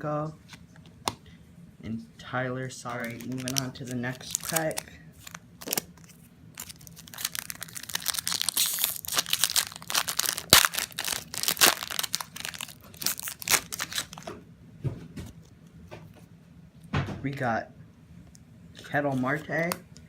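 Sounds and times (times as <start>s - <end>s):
wrapper tearing and crinkling: 2.9s - 14.3s.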